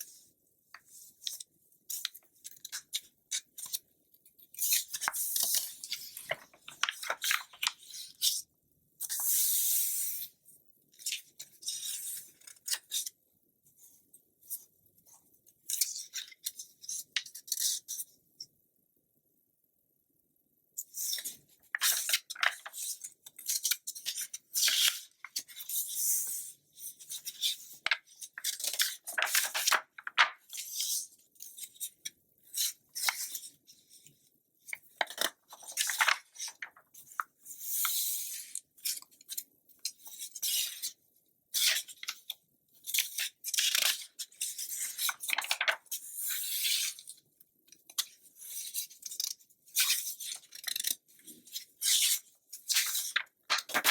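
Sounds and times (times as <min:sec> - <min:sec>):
magazine pages rustling: 0:27.9 - 0:30.4, 0:35.0 - 0:36.8, 0:45.0 - 0:45.8, 0:52.8 - 0:53.9.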